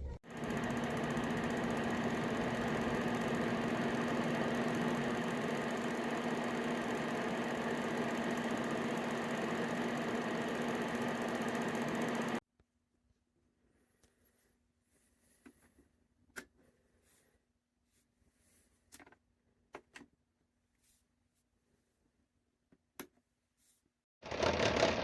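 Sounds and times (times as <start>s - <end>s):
heater fan humming: 0.3s - 12.4s.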